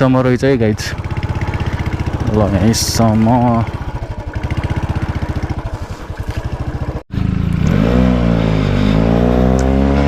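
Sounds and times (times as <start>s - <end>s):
motorcycle engine idling: 0.0s - 7.6s
motorcycle riding by: 0.9s - 10.0s.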